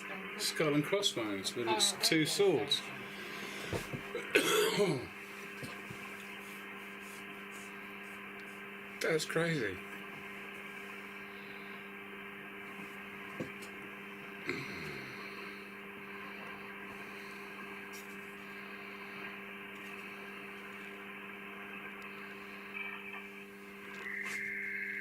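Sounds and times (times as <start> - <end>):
radio hiss: 0.0 - 25.0
radio hum: 0.0 - 25.0.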